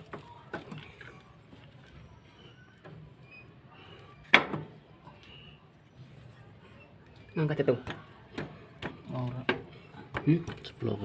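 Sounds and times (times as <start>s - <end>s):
hard object knocking: 7.8s - 10.8s.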